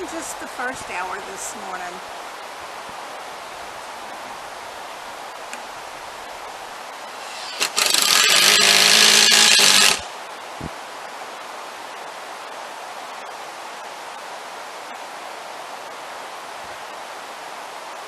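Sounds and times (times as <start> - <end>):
cordless power tool whining: 7.2 - 10.1.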